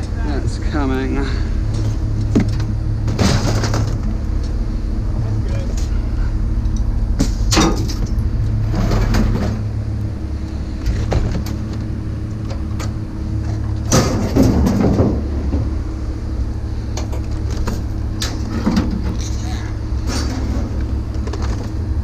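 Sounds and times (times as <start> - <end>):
vehicle engine running: 0.0 - 22.0
knocks and rattles: 1.7 - 4.2, 7.2 - 9.7, 10.8 - 15.8.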